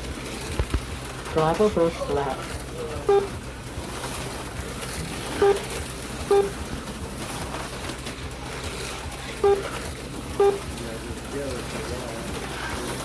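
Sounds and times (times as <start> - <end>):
slot car motor whine: 0.0 - 13.0
short electronic beeps: 6.3 - 6.5.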